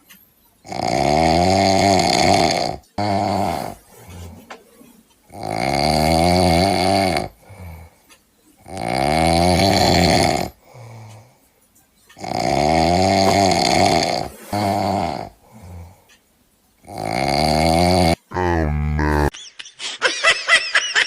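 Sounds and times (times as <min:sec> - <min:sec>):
man snoring loudly: 0:00.7 - 0:04.4, 0:05.3 - 0:07.9, 0:08.6 - 0:11.1, 0:12.2 - 0:16.0, 0:16.8 - 0:19.3
soft breaths: 0:02.8 - 0:09.1, 0:09.9 - 0:17.2.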